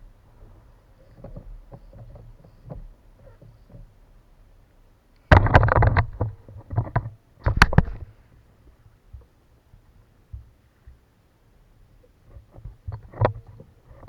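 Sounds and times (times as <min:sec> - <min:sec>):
knocking and rattling on kayak: 0:01.0 - 0:04.0, 0:05.3 - 0:08.2, 0:12.3 - 0:14.0.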